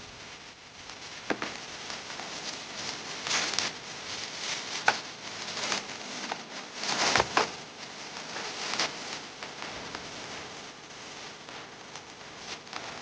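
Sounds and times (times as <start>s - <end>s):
packaging rustling and crinkling: 0.4s - 10.6s.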